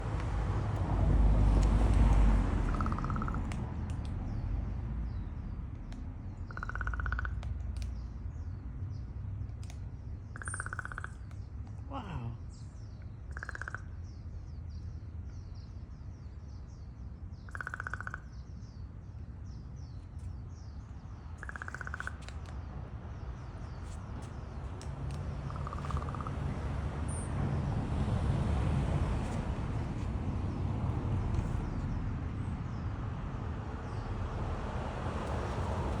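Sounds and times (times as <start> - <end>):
crow rattling clicks: 1.6 - 4.2, 5.7 - 8.0, 9.4 - 11.8, 21.4 - 22.6, 24.7 - 26.3
small birds chirping: 1.6 - 26.4, 29.2 - 33.0.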